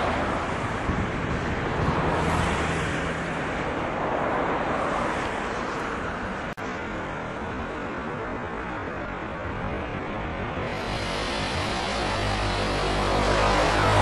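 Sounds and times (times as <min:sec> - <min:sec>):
rumbling traffic: 0:00.0 - 0:14.0
low engine hum: 0:10.6 - 0:14.0.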